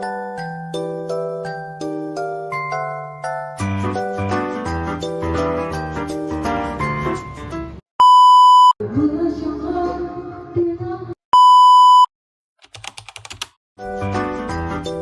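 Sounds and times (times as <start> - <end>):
electronic bleep tones: 6.9 - 8.8, 11.4 - 12.1.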